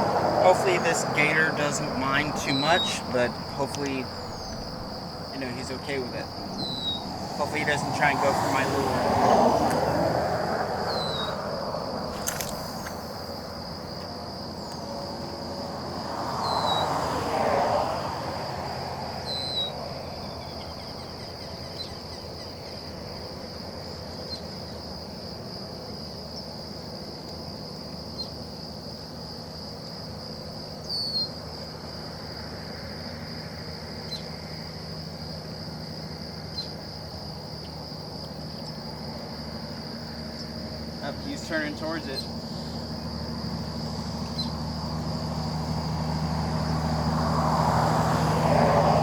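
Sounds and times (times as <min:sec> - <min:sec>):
rushing noise: 0:00.0 - 0:13.7
insects droning: 0:00.0 - 0:49.0
bird chirps: 0:02.0 - 0:05.7, 0:06.3 - 0:07.6, 0:10.9 - 0:11.4, 0:44.2 - 0:44.6.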